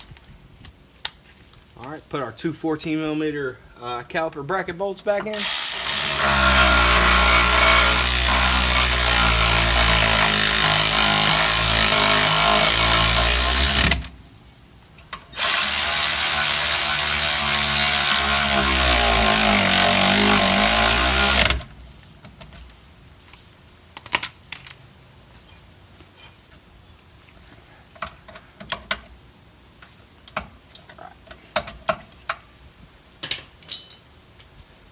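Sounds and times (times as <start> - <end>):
power tool motor running: 5.3 - 14.1, 15.4 - 21.7.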